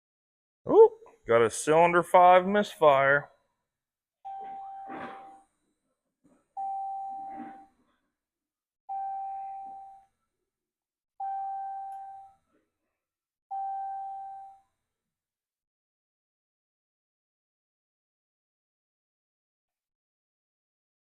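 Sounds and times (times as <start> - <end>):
electronic warning chime: 4.3 - 5.4, 8.9 - 10.1, 11.2 - 12.3, 13.5 - 14.6.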